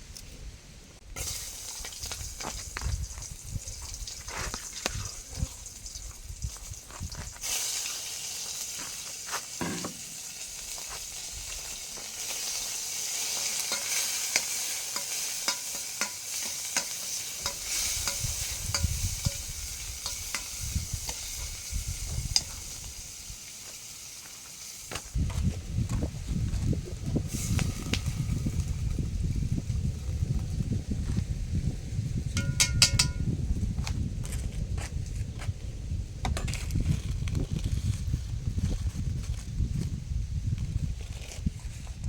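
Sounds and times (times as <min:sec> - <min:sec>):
food sizzling in a pan: 0:01.2 - 0:25.1.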